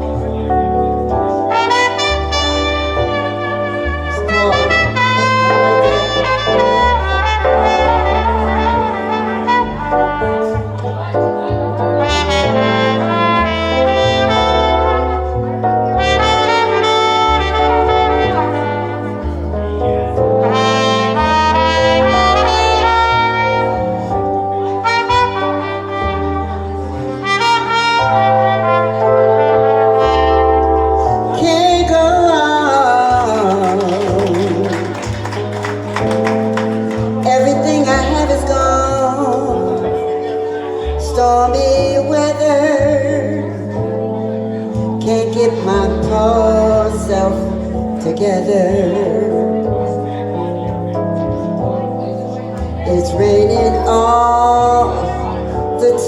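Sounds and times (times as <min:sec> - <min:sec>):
bass and rhythm section: 0:00.0 - 0:40.1
horn solo: 0:00.0 - 0:47.8.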